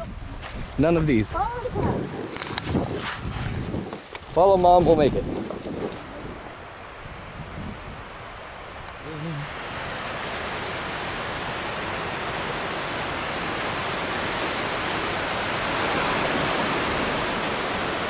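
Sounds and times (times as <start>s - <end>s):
waterfall rushing: 8.1s - 18.0s.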